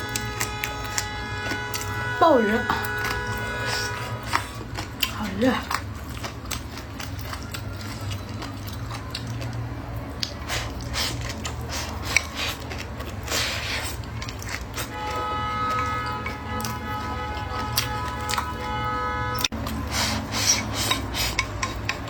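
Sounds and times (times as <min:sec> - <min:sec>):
utensils clicking against dishes: 0:20.4 - 0:22.0.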